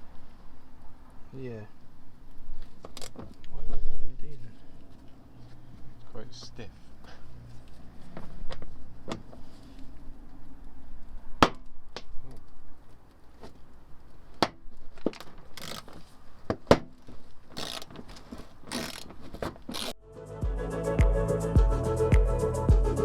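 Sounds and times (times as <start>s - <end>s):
rustling: 12.1s - 20.0s.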